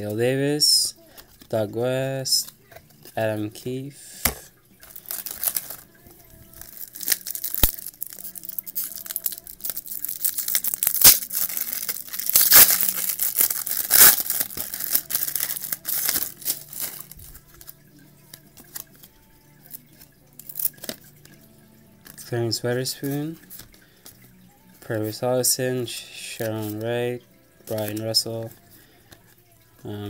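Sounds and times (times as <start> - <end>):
cards rustling: 0.0 - 21.4, 22.0 - 24.2, 24.8 - 27.0, 27.6 - 29.4
card pack wrapper crinkling and tearing: 4.2 - 5.9, 6.5 - 21.1.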